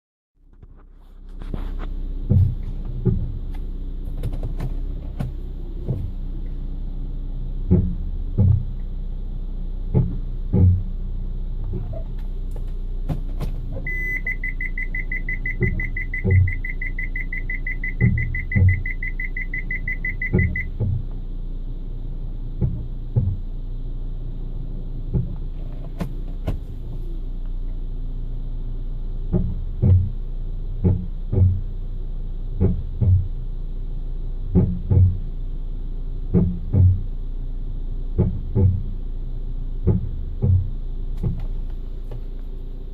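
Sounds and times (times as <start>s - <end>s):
brake knocks and groans: 0.4s - 42.9s
steady low rumble: 0.4s - 42.9s.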